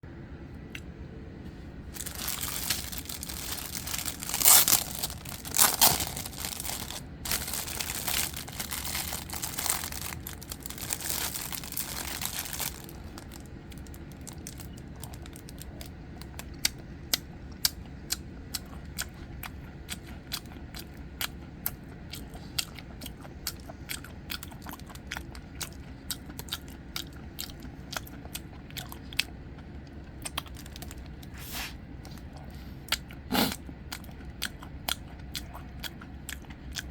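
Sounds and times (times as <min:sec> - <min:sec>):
wrapping crinkling and tearing: 0:02.0 - 0:15.6
chewing: 0:02.0 - 0:31.3, 0:32.0 - 0:36.9.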